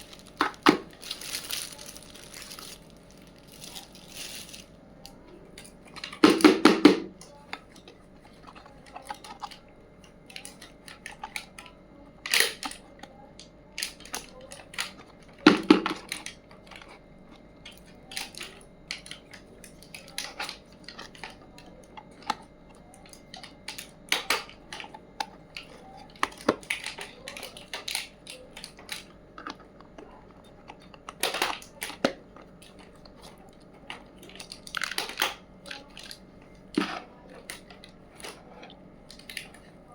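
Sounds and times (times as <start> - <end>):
toy pieces clattering: 0.0 - 4.7
toy kitchen pieces clicking and tapping: 0.0 - 39.6.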